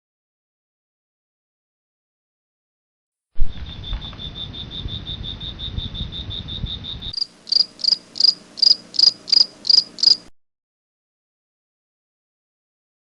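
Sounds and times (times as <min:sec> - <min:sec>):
low rumble: 0:03.4 - 0:07.2
crickets chirping: 0:03.4 - 0:10.3.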